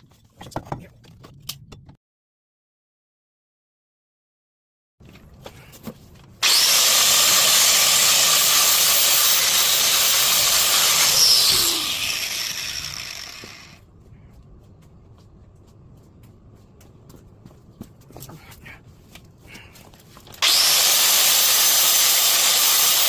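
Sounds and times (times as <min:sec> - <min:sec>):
power tool cutting steel: 0:06.4 - 0:13.8, 0:20.4 - 0:23.0.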